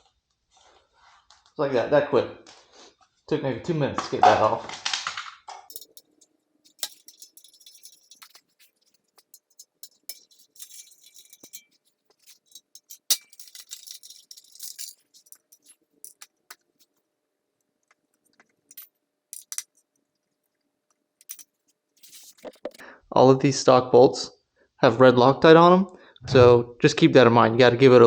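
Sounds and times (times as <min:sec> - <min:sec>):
metal tools clinking and rattling: 0:05.7 - 0:16.9, 0:18.7 - 0:19.8, 0:21.2 - 0:22.8
scraping rustles: 0:05.7 - 0:17.0, 0:21.2 - 0:22.8.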